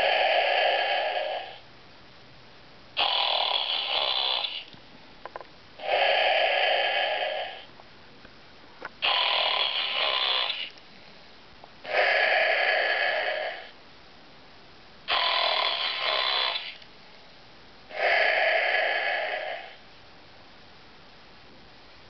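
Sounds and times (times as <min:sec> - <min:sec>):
plush toy snoring: 0:03.0 - 0:04.6, 0:09.0 - 0:10.7, 0:15.1 - 0:16.8.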